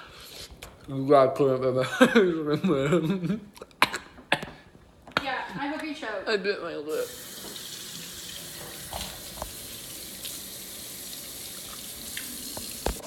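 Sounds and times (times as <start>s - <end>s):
tap water running into sink: 7.0s - 13.0s.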